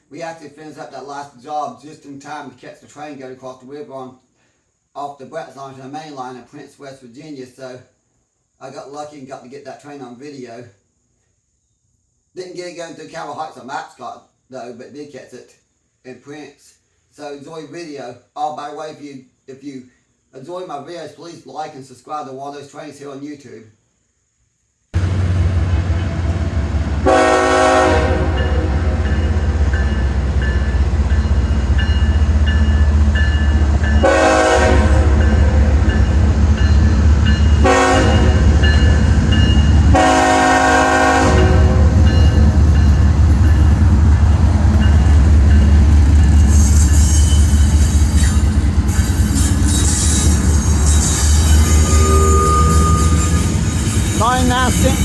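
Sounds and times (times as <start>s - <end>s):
train horn: 25.0s - 31.4s, 32.0s - 36.3s, 37.0s - 42.9s, 49.4s - 55.0s
diesel locomotive rumble: 25.0s - 55.0s.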